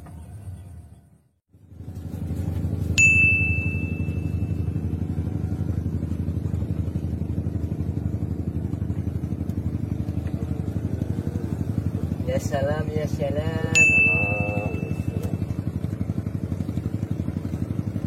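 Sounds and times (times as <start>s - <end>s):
small engine running: 0.0s - 18.0s
sharp metallic ding: 3.0s - 4.7s, 13.7s - 15.3s.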